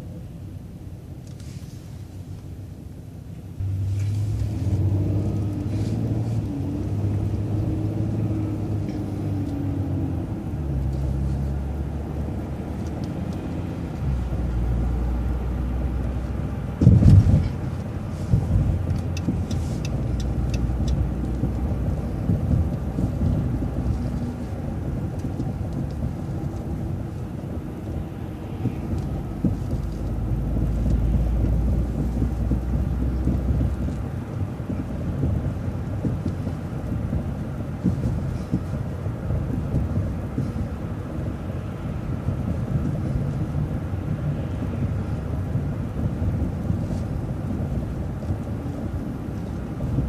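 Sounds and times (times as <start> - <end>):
bus engine and road noise: 0.0 - 50.0.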